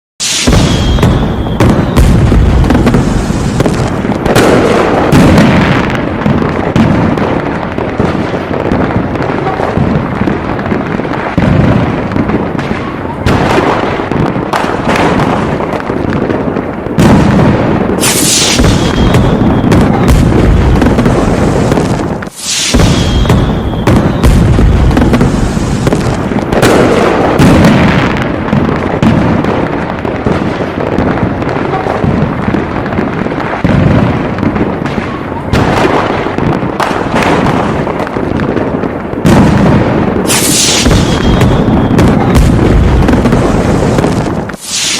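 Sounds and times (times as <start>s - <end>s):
short high whistle: 0.2s - 2.1s, 18.0s - 20.1s, 22.4s - 24.3s
fireworks booming and crackling: 0.2s - 44.9s.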